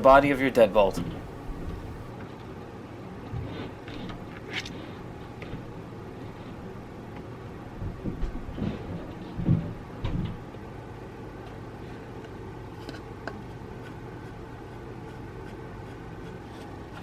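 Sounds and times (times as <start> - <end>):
low hiss: 0.0 - 2.1.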